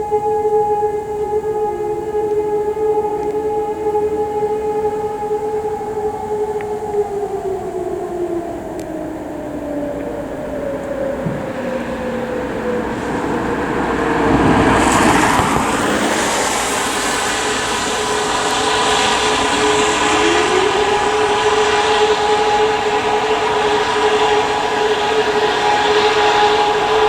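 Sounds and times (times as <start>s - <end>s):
broad rushing noise: 0.0s - 27.0s
mechanical rotor siren wailing: 0.0s - 27.0s.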